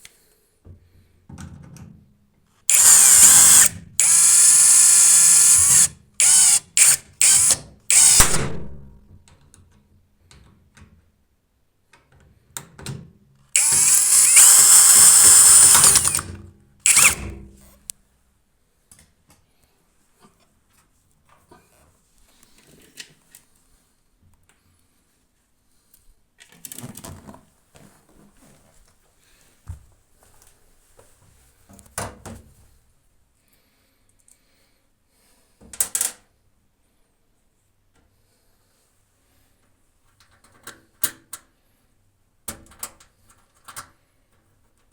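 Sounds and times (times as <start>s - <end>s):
cordless screwdriver driving screws: 2.7s - 8.4s, 13.6s - 17.4s.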